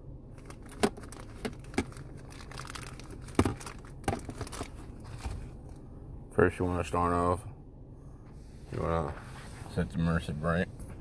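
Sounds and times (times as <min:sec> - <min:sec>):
packaging crinkling: 0:00.3 - 0:05.5.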